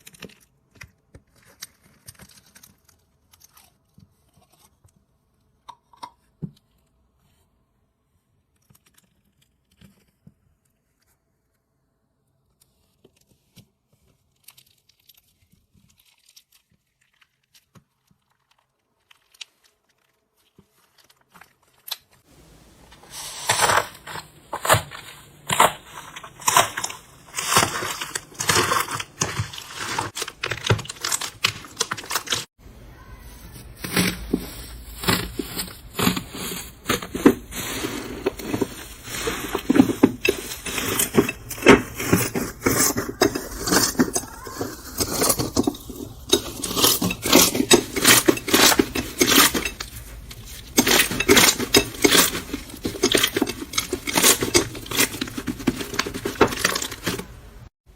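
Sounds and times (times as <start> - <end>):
crunchy slime crackling and popping: 23.4 - 32.6, 33.6 - 55.2.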